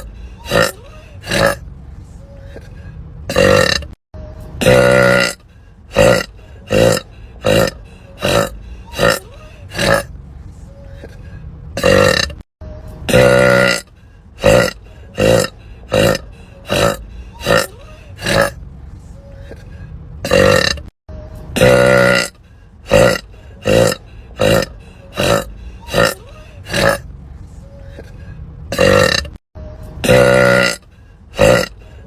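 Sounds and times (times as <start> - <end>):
woman burping: 0.4 - 1.6, 3.3 - 4.0, 4.6 - 5.4, 6.0 - 10.1, 11.8 - 12.4, 13.1 - 13.8, 14.4 - 18.6, 20.2 - 20.9, 28.7 - 29.4, 30.0 - 30.8, 31.4 - 31.7.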